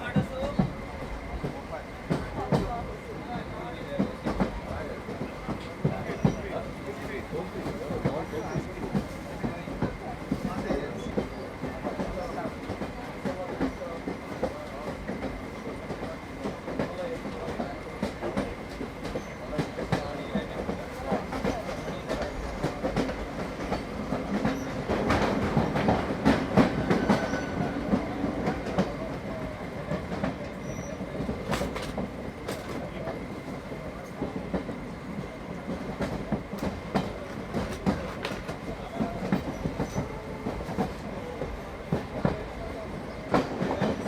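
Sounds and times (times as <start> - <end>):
train carriage rumble: 0.0 - 44.0
wheels clicking over rail joints: 29.9 - 33.2, 36.0 - 41.0.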